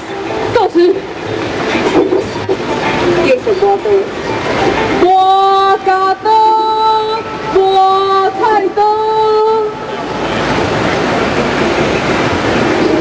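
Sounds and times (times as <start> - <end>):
background din: 0.0 - 8.0
woman singing long notes: 4.9 - 9.8.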